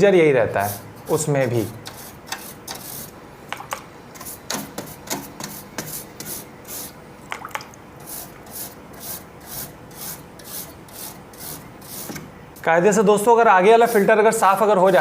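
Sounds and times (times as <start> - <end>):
brush scrubbing metal fins: 8.0 - 12.2, 13.7 - 15.0.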